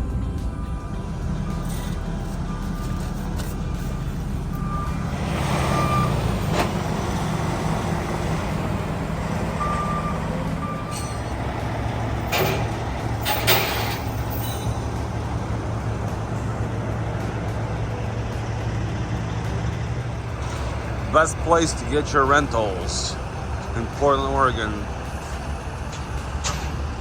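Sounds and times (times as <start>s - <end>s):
heavy vehicle engine idling: 0.0s - 27.0s
reversing alarm beeps: 0.6s - 15.2s.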